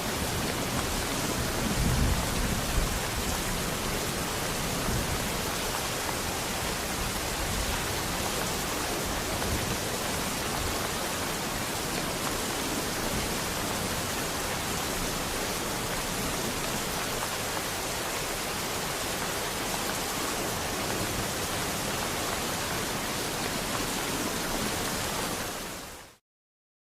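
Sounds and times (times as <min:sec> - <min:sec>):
steady rain falling: 0:00.0 - 0:26.2.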